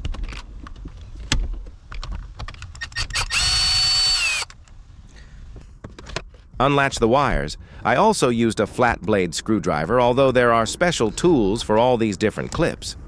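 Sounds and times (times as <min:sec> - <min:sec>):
power drill motor whine: 0:02.8 - 0:04.6.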